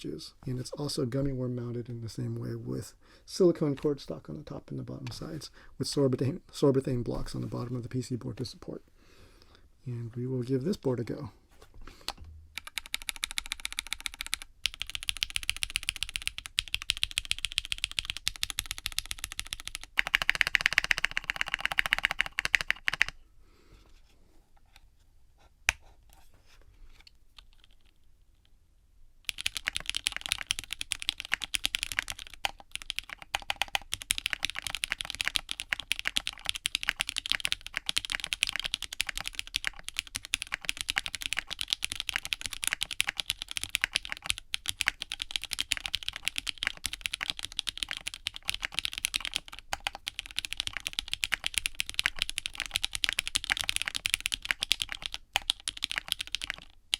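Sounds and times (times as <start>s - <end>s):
keyboard typing clacks: 12.6s - 23.2s, 29.3s - 56.7s.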